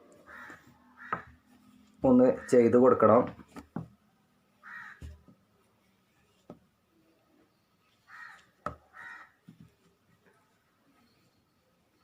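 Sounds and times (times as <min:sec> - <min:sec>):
crow cawing faintly: 0:00.2 - 0:01.5, 0:04.6 - 0:05.2, 0:08.0 - 0:09.4.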